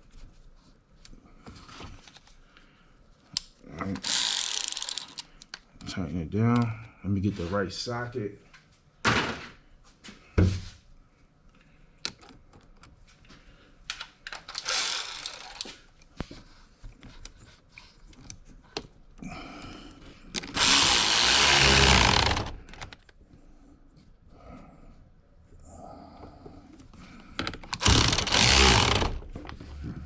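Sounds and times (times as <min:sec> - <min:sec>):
tool running down a nut: 0:04.0 - 0:05.1, 0:14.5 - 0:15.7, 0:20.4 - 0:22.8, 0:27.7 - 0:29.3.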